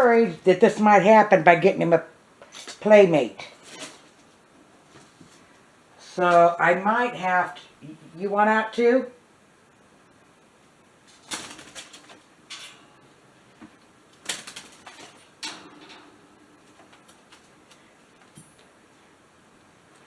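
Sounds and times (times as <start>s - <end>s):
metal bird cage rattling: 11.1s - 13.1s, 14.2s - 17.5s.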